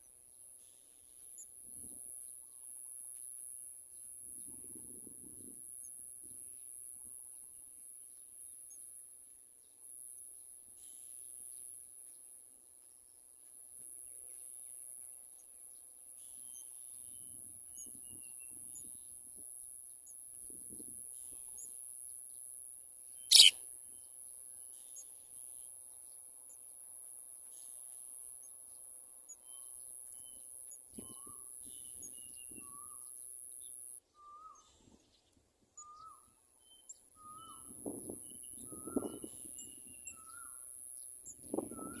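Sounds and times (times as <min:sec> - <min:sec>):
birds chirping: 0:23.3 - 0:23.5
lower repeated bird call: 0:23.3 - 0:23.6.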